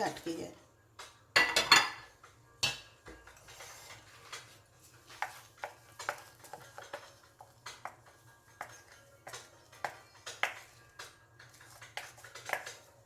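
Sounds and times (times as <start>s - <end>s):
utensil tapping a baking dish: 5.2s - 12.9s.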